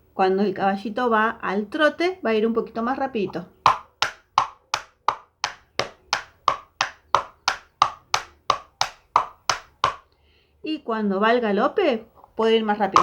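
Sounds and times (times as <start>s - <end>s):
plastic caps tapping like hoofbeats: 3.6s - 10.1s.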